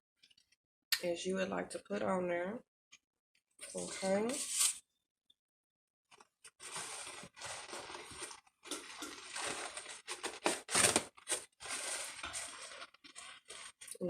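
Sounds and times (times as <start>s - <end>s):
food rustling and crinkling: 6.1s - 14.0s.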